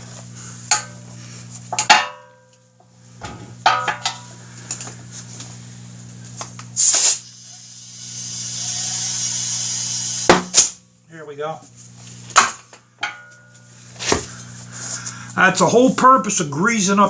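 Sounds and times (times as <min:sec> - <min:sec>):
steady low hum: 0:00.0 - 0:17.0
air hissing: 0:06.8 - 0:10.8.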